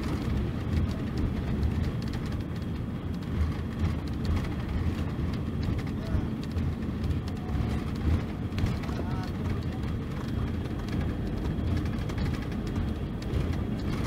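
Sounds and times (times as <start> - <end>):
diesel engine running: 0.0 - 14.0.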